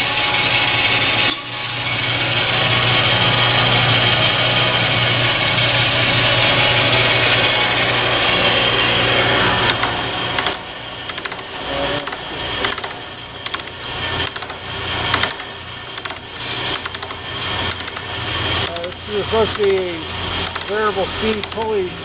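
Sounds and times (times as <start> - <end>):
bandsaw motor and blade running: 0.0 - 22.0.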